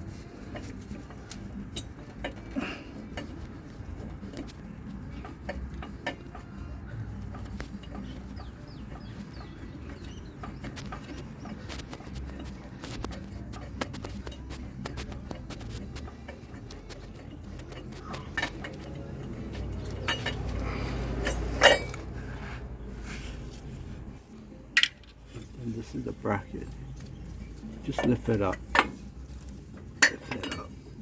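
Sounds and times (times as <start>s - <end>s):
metallic clicks and taps of tools: 0.5s - 8.4s, 9.9s - 22.1s, 24.7s - 25.2s, 27.0s - 30.8s.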